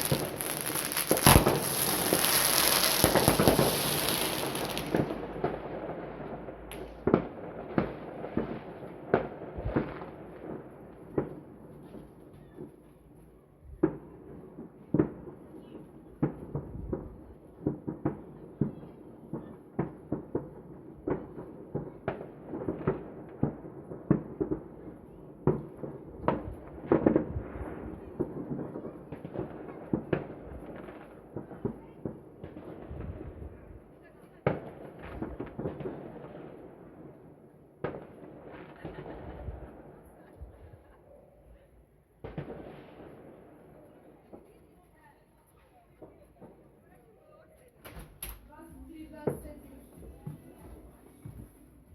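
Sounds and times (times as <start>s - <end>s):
distant explosions rumbling: 0.0s - 7.8s
fireworks bangs and pops: 0.0s - 41.6s, 42.2s - 47.0s, 47.6s - 51.9s.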